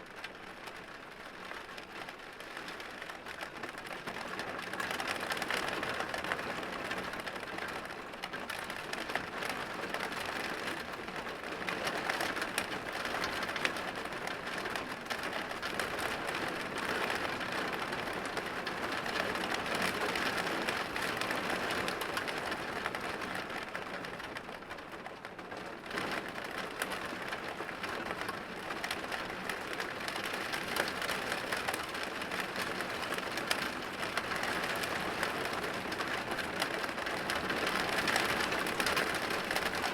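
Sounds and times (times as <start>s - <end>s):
rain on window glass: 0.1s - 39.9s.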